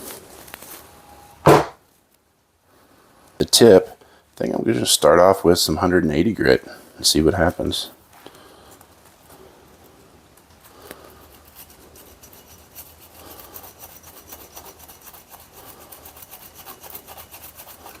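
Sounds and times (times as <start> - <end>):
screwdriver tip rasping on sandpaper: 11.1 - 18.0.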